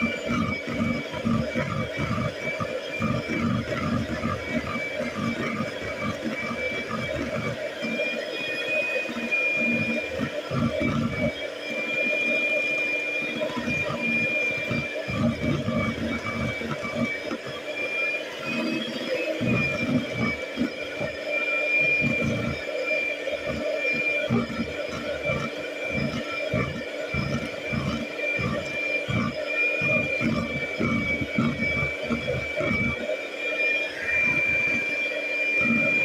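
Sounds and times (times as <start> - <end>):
steady high whine: 0.0 - 36.0
whisk strokes in a bowl: 0.0 - 36.0.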